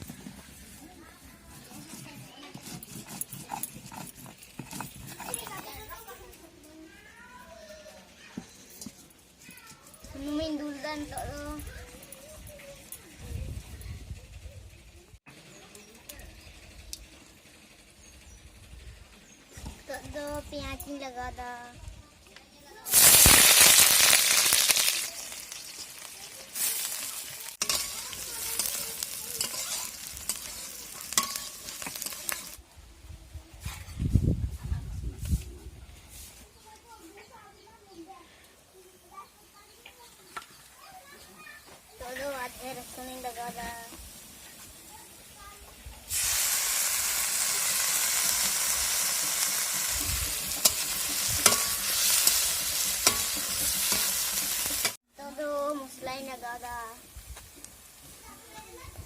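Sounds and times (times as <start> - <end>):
food sizzling in hot oil: 22.8 - 32.6, 42.0 - 59.0
stirring clicks: 24.3 - 32.6.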